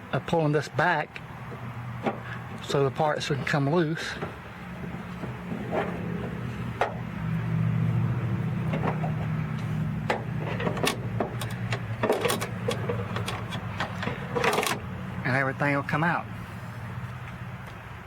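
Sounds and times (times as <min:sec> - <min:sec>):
clicks of car door lock parts: 0:08.7 - 0:14.9.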